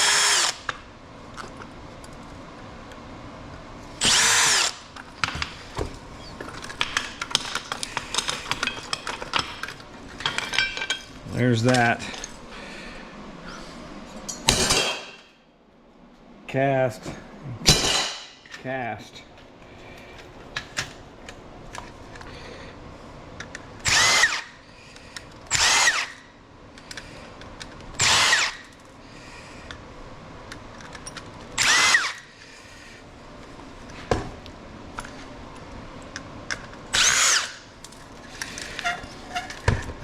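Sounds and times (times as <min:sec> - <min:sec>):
cordless drill spinning: 0:00.0 - 0:00.7, 0:04.0 - 0:04.9, 0:23.8 - 0:24.6, 0:25.5 - 0:26.2, 0:28.0 - 0:28.7, 0:31.6 - 0:32.3, 0:36.9 - 0:37.7
clicks and clatter of parts: 0:00.6 - 0:03.0, 0:04.9 - 0:12.4, 0:19.4 - 0:22.4, 0:23.4 - 0:24.1, 0:24.9 - 0:29.0, 0:30.4 - 0:32.5, 0:33.4 - 0:40.0.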